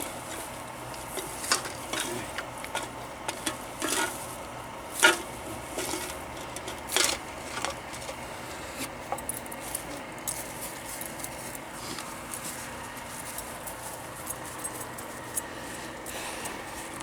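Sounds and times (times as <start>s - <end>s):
junk parts clattering: 0.0s - 17.0s.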